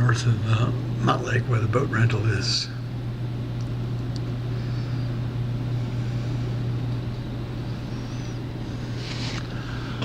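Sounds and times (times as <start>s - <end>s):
steady low-pitched hum: 0.0s - 10.0s.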